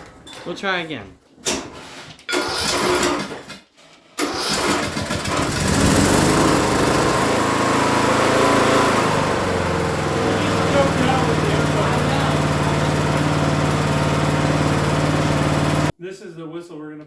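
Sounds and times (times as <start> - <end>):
lawn tractor engine starting: 2.3 - 3.6, 4.2 - 15.9.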